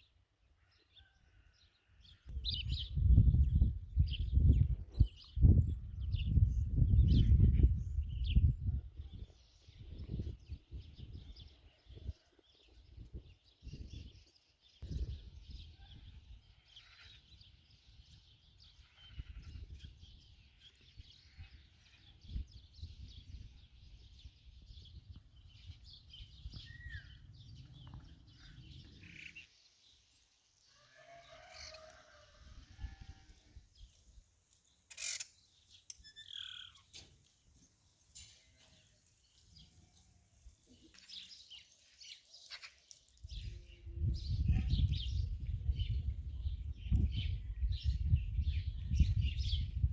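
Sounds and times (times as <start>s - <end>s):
birds chirping and calling: 2.0s - 29.6s, 34.8s - 49.9s
farm animal bleat: 16.6s - 17.4s, 18.8s - 19.8s.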